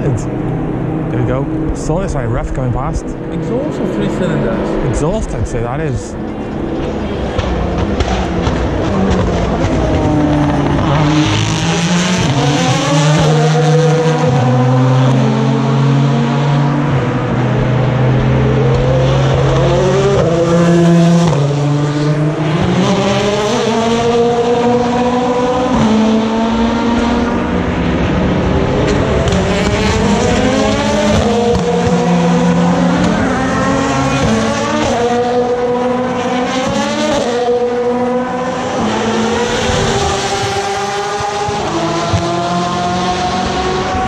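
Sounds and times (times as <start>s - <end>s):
race car engines downshifting: 0.0s - 44.0s
race cars accelerating: 0.0s - 44.0s.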